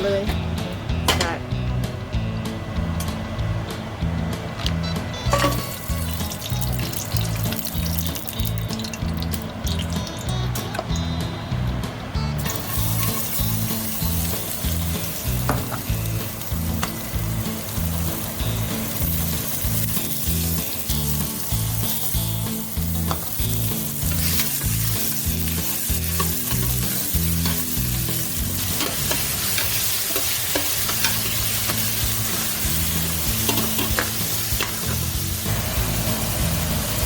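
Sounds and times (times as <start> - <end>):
greens sizzling in a pan: 5.4 - 10.4, 12.4 - 37.0
utensil clicking against pan: 28.6 - 31.9.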